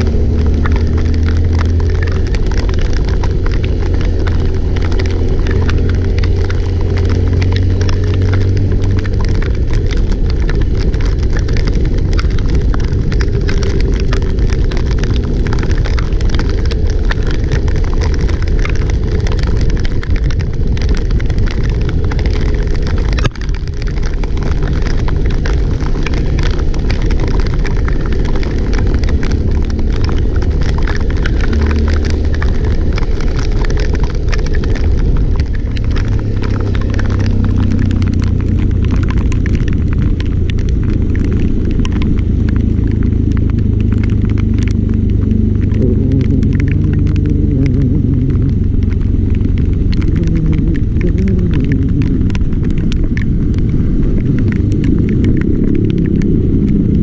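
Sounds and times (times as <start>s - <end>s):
vehicle driving in heavy rain: 0.0s - 57.0s.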